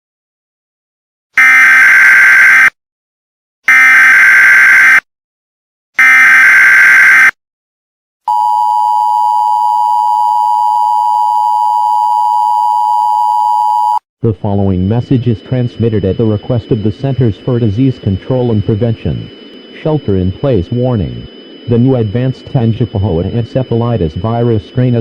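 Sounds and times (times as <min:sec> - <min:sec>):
buzzy data bursts: 0:14.7 - 0:25.0.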